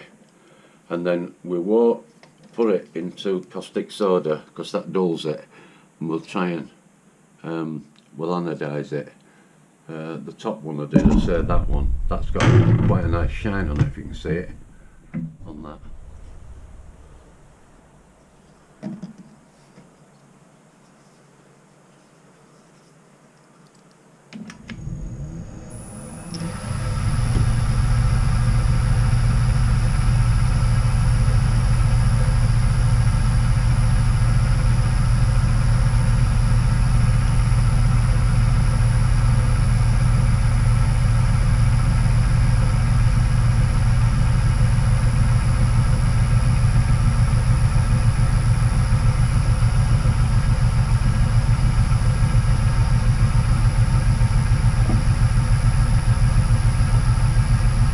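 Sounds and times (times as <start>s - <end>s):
lathe motor humming: 24.6s - 57.9s.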